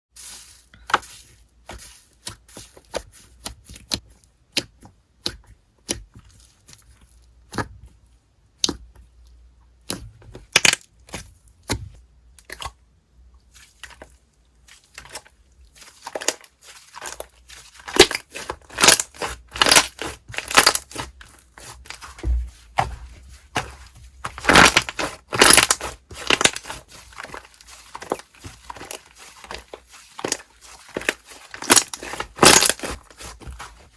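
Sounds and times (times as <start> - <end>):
slime crackling and popping: 16.0 - 22.0, 23.6 - 33.9.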